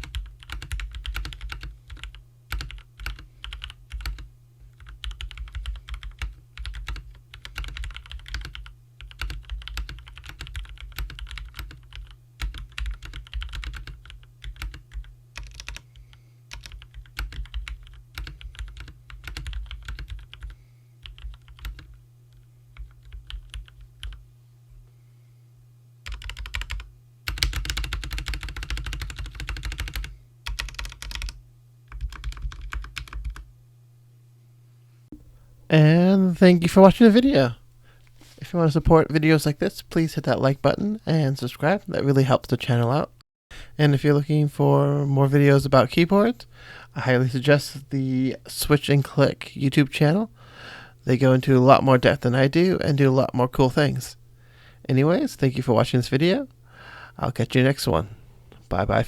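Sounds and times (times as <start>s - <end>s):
mechanical keyboard typing: 0.0s - 15.9s, 16.5s - 22.0s, 22.8s - 24.2s, 26.1s - 33.5s.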